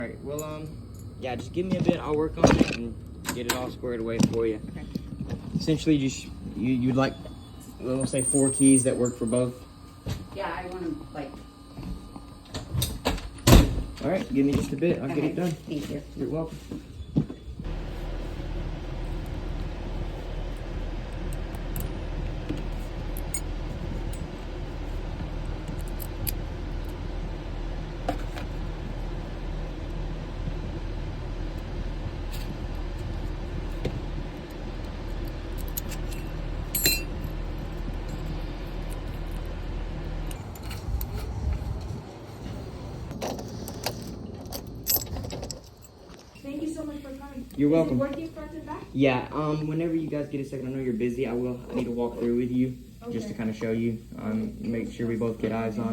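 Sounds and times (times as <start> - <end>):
low hum: 0.0 - 53.1
keys jangling: 23.0 - 24.3, 35.1 - 37.2, 40.3 - 41.5, 43.8 - 46.2.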